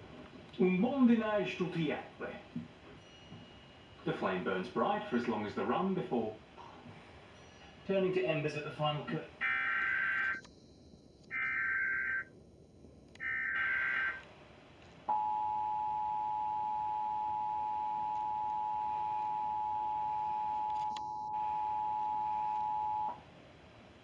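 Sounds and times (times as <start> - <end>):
harsh data bursts: 7.9 - 14.3
two-tone attention signal: 11.3 - 12.3, 13.2 - 14.2.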